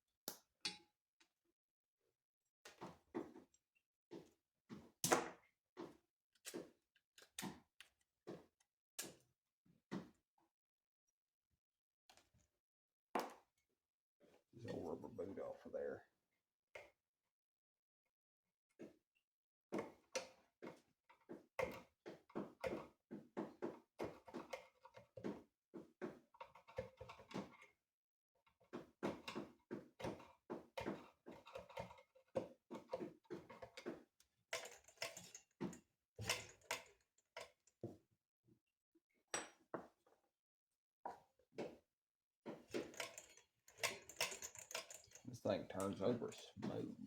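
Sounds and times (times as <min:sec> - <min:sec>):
metallic clinks and knocks from tools: 0:29.0 - 0:37.6, 0:42.6 - 0:46.0.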